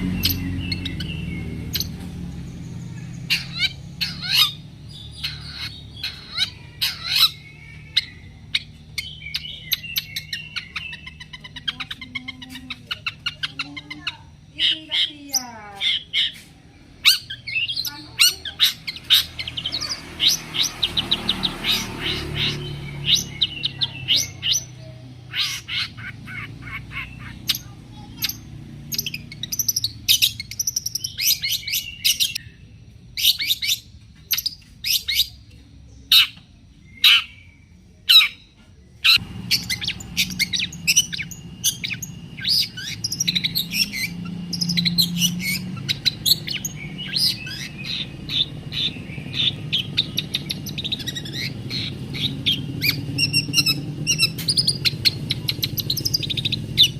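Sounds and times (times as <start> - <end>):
bird chattering calls: 0.0 - 32.6, 33.2 - 56.9
low background rumble: 38.7 - 56.9.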